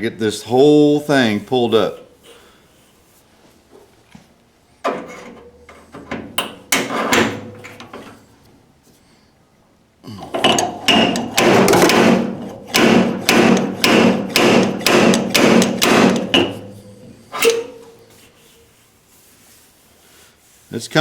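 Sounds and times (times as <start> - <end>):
sharp metal strikes: 10.4 - 17.8
metal ringing tone: 15.1 - 18.1.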